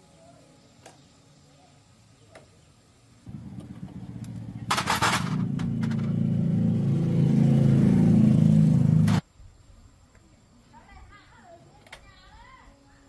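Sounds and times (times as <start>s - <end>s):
motorcycle engine running: 3.3s - 9.2s.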